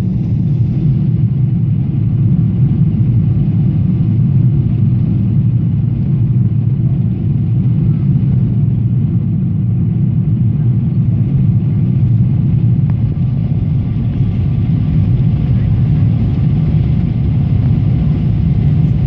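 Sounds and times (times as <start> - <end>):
airplane cabin engine rumble: 0.0 - 19.0
airflow past fuselage: 10.8 - 19.0.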